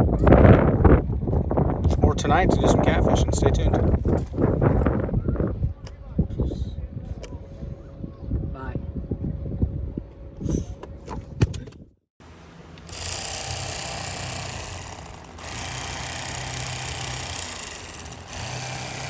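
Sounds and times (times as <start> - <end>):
handling knocks and bumps: 10.8 - 11.8
engine hum: 12.3 - 19.0.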